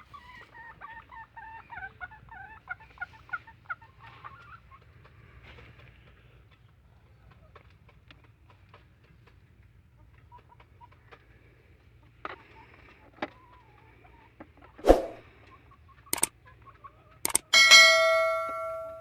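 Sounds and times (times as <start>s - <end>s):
chickens clucking: 0.0s - 7.7s, 8.7s - 11.4s
ringing metallic clang: 17.4s - 19.0s.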